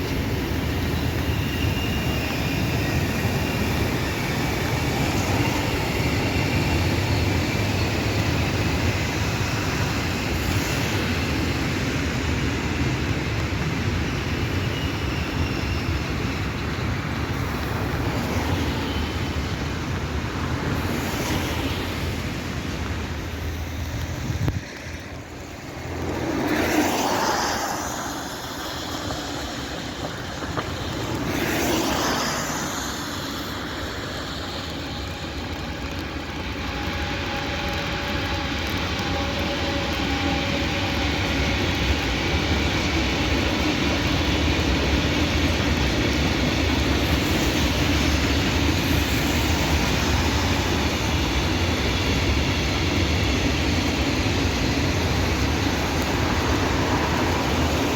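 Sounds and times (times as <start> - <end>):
traffic on wet roads: 0.0 - 57.9
vehicles swishing past: 23.1 - 34.1.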